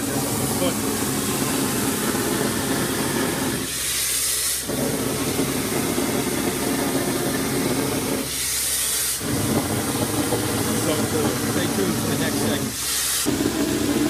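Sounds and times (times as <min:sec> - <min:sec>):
concrete spray hissing: 0:00.0 - 0:14.0
steady rumble: 0:09.2 - 0:12.6.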